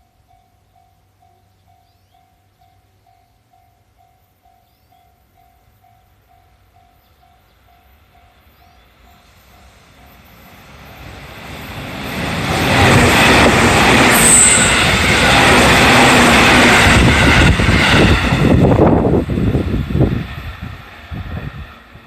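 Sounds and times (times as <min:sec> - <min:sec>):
level-crossing warning bell: 0:00.0 - 0:10.8
electric train passing: 0:00.0 - 0:22.0
high squeal: 0:14.0 - 0:15.1.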